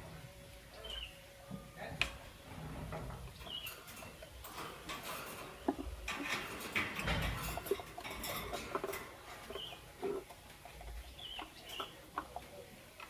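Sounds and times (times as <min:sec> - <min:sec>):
birds clicking and scratching: 0:00.0 - 0:13.0
bird chirp: 0:00.2 - 0:01.6, 0:03.2 - 0:04.3, 0:07.1 - 0:13.0.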